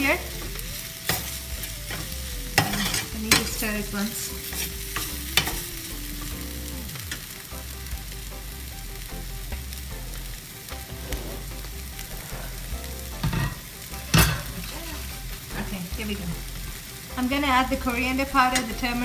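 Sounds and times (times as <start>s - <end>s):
spoon stirring and scraping: 0.0s - 6.7s
food sizzling in a pan: 0.0s - 19.0s.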